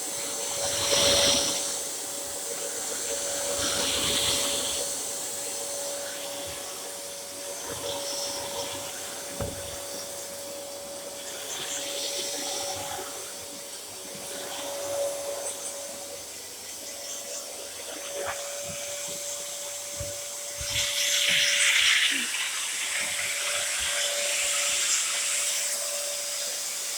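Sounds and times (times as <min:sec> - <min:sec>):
vacuum cleaner motor whine: 0:00.0 - 0:26.9
air hissing: 0:09.2 - 0:10.3.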